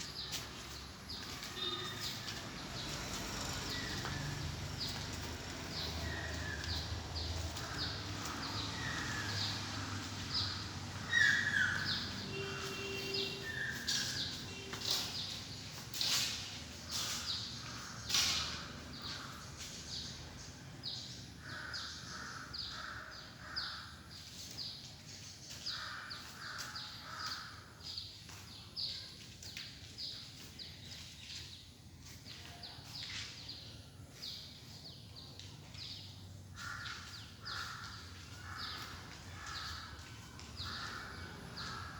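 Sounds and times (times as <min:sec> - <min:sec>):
lower harsh bird calls: 0:10.4 - 0:19.4
high bird chirp: 0:11.1 - 0:15.4.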